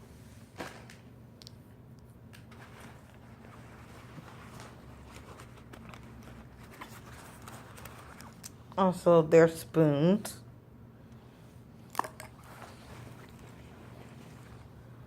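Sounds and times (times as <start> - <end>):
low steady hum: 0.0 - 15.0
rustling of items handled: 2.4 - 8.8, 11.5 - 15.0.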